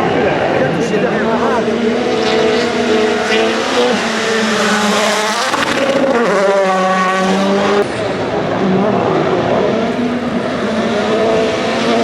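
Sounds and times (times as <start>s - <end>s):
rally car engine at high revs: 0.0s - 12.0s.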